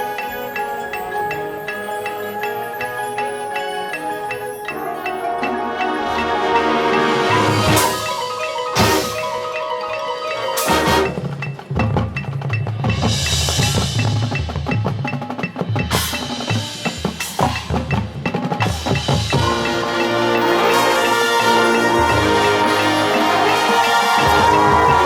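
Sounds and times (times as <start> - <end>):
ringing mallet percussion: 0.0 - 25.0
rapid drum strokes: 10.5 - 25.0.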